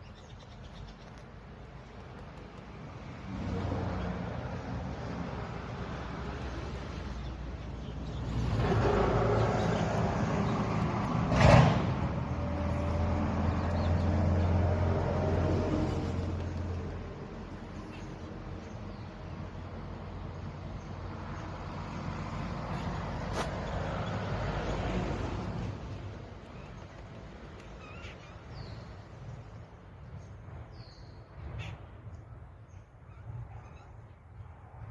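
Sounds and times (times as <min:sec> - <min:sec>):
birds chirping: 0:00.0 - 0:11.4, 0:12.0 - 0:34.5
vehicle engine droning: 0:02.6 - 0:17.8.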